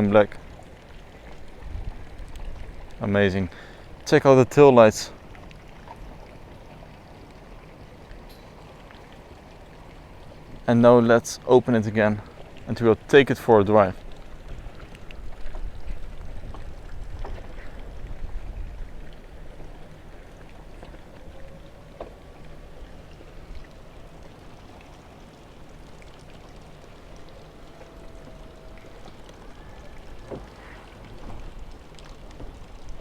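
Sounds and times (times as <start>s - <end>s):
low outdoor rumble: 0.0s - 33.0s
faint motor hum: 14.0s - 33.0s.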